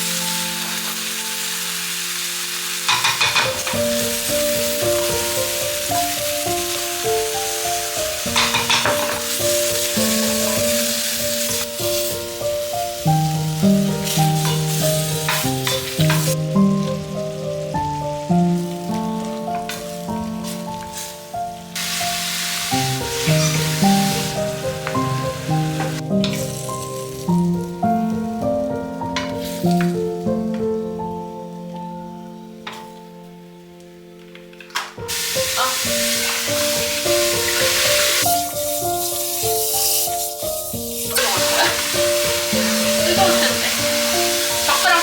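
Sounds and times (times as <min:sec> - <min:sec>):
food sizzling in a pan: 0:00.0 - 0:31.2, 0:35.0 - 0:45.0
melodic background music: 0:00.0 - 0:45.0.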